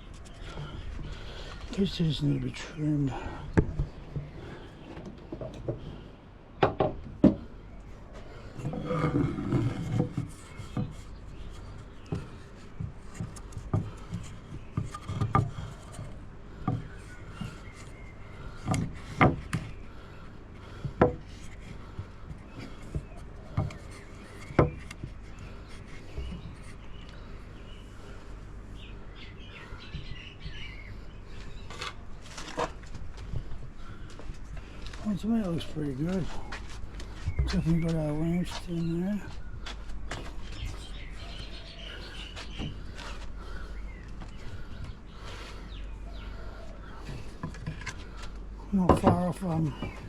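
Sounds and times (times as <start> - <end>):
wooden knocks: 6.6 - 7.4
wood scraping and rubbing: 8.6 - 12.3.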